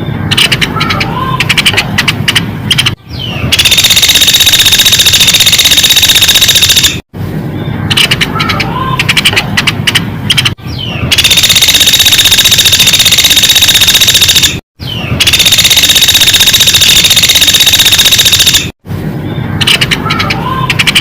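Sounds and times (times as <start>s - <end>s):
woodpecker rattling trill: 0.3s - 7.0s, 7.9s - 14.6s, 15.2s - 18.7s, 19.6s - 21.0s.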